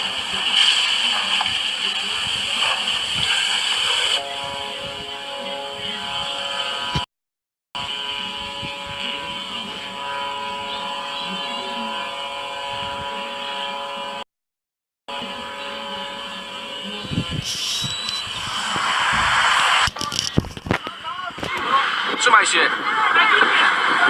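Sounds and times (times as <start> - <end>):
boat engine running: 7.8 - 14.2.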